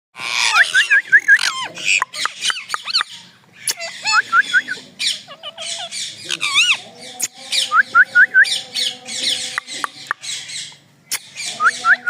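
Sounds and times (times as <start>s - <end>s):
parrots chirping and squawking: 0.2s - 12.0s.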